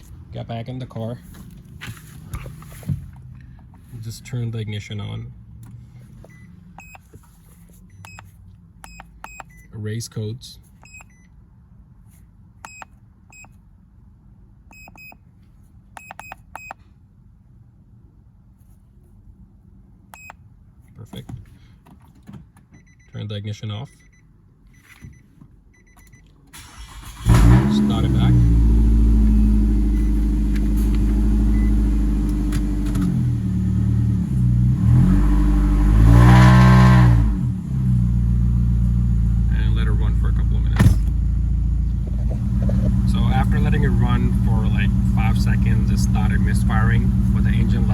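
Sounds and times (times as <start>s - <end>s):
car engine misfiring: 26.5s - 47.9s
low background hum: 38.0s - 47.9s.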